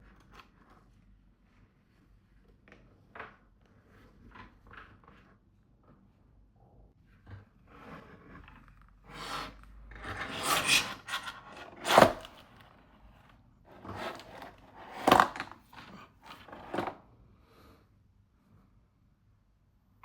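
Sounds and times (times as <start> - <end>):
packaging rubbing and scraping: 8.4 - 12.6, 13.7 - 16.8.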